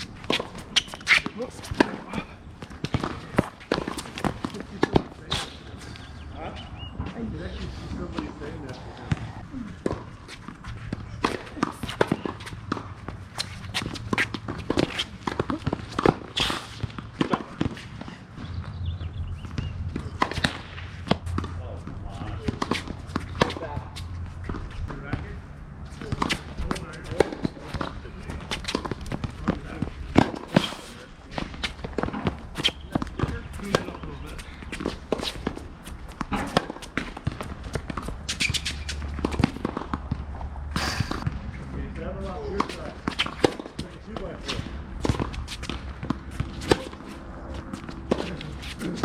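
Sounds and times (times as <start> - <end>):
shoe scuffs on court: 0.0 - 18.6, 26.0 - 40.0, 40.7 - 41.3
footsteps on tennis court: 0.0 - 49.0.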